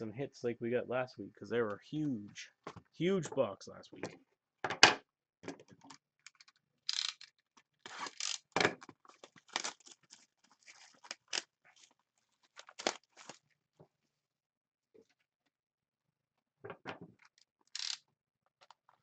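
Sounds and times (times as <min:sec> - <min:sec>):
plastic and cardboard tearing: 0:07.8 - 0:11.9, 0:12.5 - 0:13.4.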